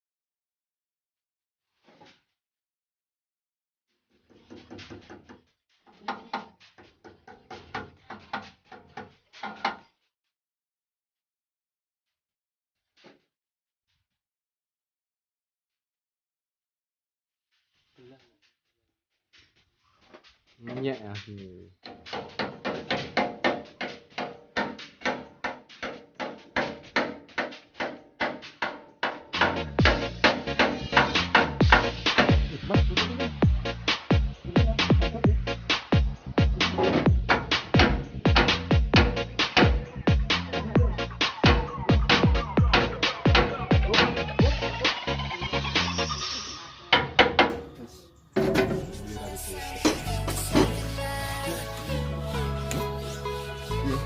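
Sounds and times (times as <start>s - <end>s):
hard objects knocking and rattling: 4.2s - 9.9s, 21.8s - 32.4s
electronic music with steady beat: 29.3s - 46.6s, 47.5s - 54.0s.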